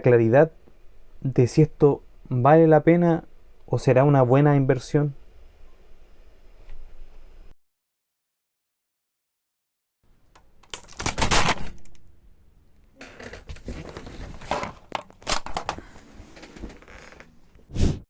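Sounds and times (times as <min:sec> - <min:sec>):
packaging tearing and crinkling: 0:10.6 - 0:12.1, 0:13.0 - 0:17.2.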